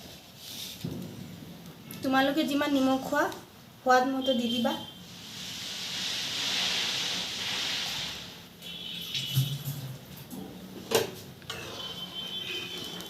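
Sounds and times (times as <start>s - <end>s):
water pouring into a pot: 5.2s - 10.1s.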